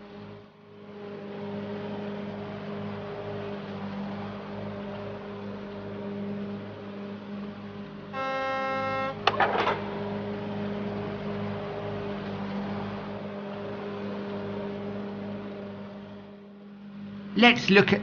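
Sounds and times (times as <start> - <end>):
toy horn beep: 8.2 - 9.3
clatter of clicks: 9.2 - 10.1.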